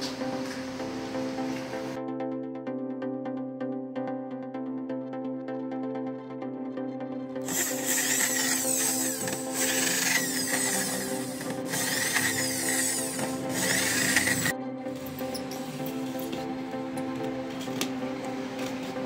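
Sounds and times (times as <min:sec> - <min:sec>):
background music: 0:00.0 - 0:19.0
power tool running: 0:07.4 - 0:16.2.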